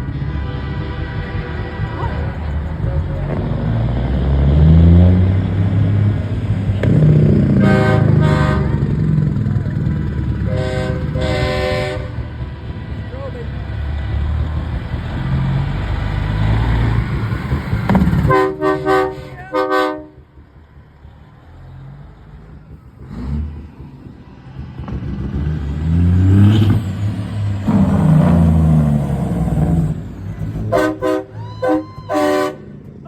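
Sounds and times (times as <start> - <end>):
truck horn blasts: 0.0 - 3.8, 6.7 - 9.2, 10.3 - 12.4, 18.0 - 20.3, 30.5 - 32.9
diesel truck engines running: 0.0 - 33.0.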